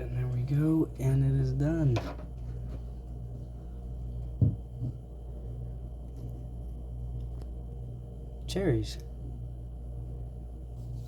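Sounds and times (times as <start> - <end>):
low hum with faint hiss: 0.0 - 11.0
soft thump: 4.4 - 5.0.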